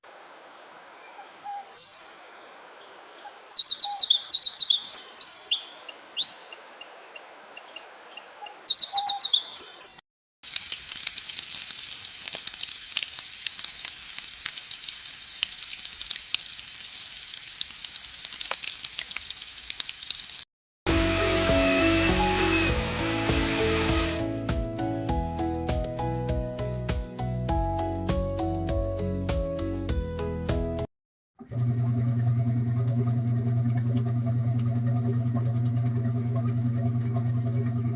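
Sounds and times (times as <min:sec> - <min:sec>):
birds chirping: 0:01.0 - 0:10.0
high crackling hiss: 0:10.5 - 0:24.3.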